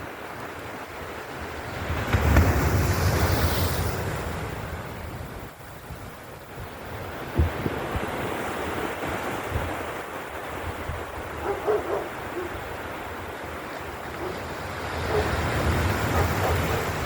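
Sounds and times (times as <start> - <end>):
ocean surf washing on beach: 0.0 - 17.0
wind on microphone: 5.8 - 17.0.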